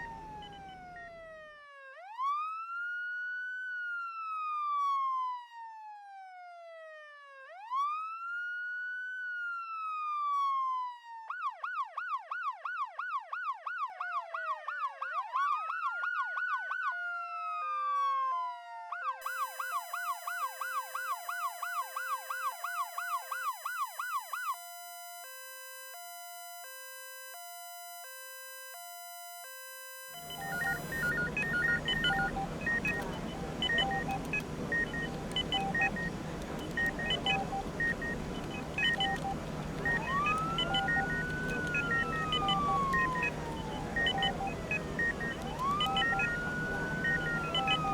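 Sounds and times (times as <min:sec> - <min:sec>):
steady background hum: 0:00.0 - 0:01.3, 0:30.0 - 0:47.9
electronic emergency siren: 0:00.0 - 0:01.4, 0:18.3 - 0:47.9
short electronic beeps: 0:19.2 - 0:47.9.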